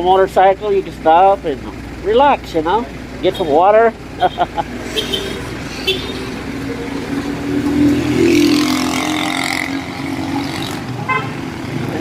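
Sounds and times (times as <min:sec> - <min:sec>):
vehicle engines in traffic: 0:00.0 - 0:12.0
vehicle passing close by: 0:04.1 - 0:12.0.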